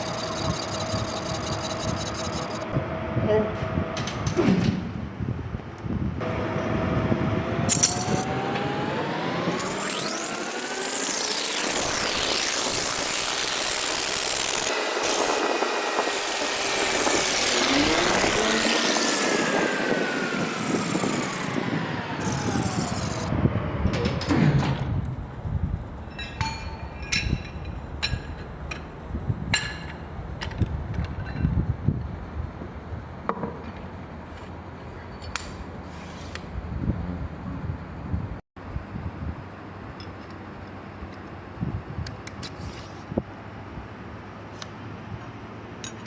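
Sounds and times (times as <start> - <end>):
metal parts clinking: 0.0 - 2.7, 7.7 - 8.6, 9.5 - 21.6, 22.2 - 23.3, 26.1 - 28.9
power tool grinding metal: 0.0 - 3.1, 6.2 - 23.6.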